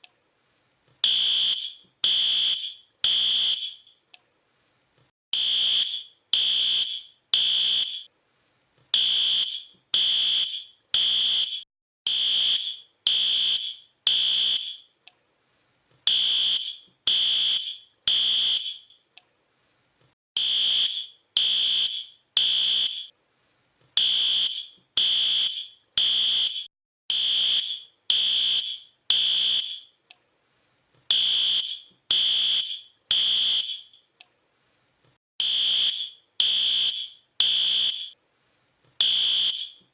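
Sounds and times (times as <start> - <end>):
fire alarm beeping: 1.0 - 3.9, 5.4 - 8.1, 9.0 - 14.9, 16.1 - 18.9, 20.4 - 23.1, 24.0 - 29.9, 31.1 - 34.0, 35.4 - 38.2, 39.0 - 39.9.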